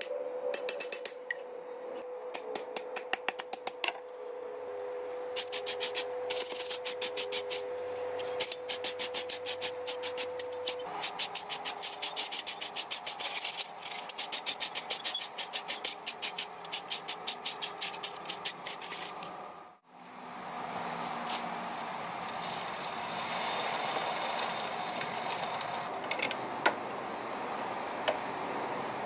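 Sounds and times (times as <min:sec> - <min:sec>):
steady hum: 0:03.9 - 0:12.1
rapid scraping strokes: 0:05.0 - 0:19.3.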